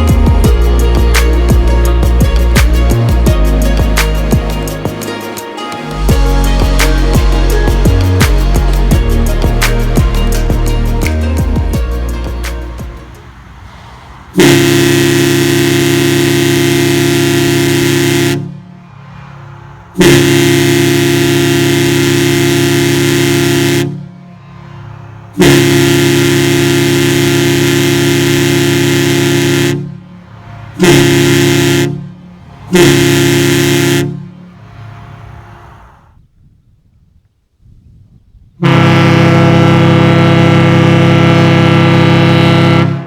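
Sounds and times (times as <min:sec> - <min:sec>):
ship horn blasts: 0:14.3 - 0:19.1, 0:19.9 - 0:36.0, 0:38.6 - 0:43.0.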